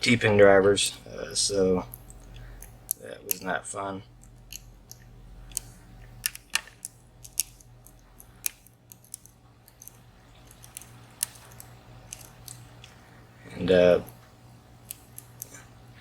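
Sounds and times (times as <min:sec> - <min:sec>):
faint steady hum: 0:00.0 - 0:16.0
small metallic clicks and taps: 0:04.2 - 0:13.0.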